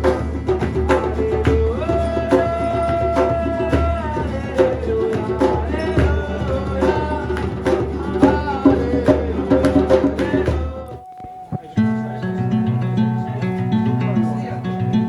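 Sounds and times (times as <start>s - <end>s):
steady drum beat: 0.0s - 11.7s
held bending melody: 0.0s - 15.0s.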